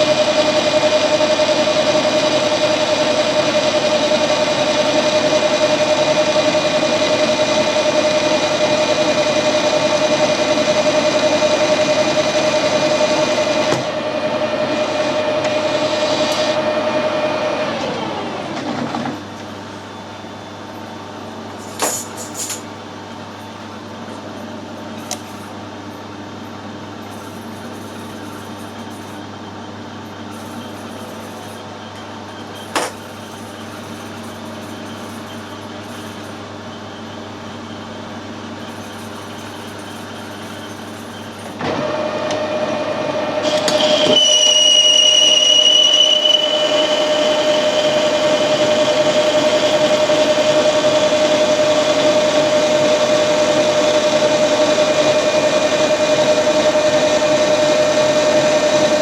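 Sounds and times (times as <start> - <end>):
high steady whine: 0.0 - 18.5, 41.0 - 59.0
metal lathe hum: 0.0 - 18.5, 33.4 - 59.0.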